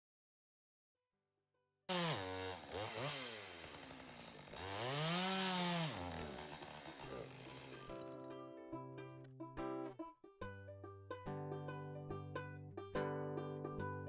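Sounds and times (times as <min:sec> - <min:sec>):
chainsaw running and revving: 0:01.9 - 0:08.2.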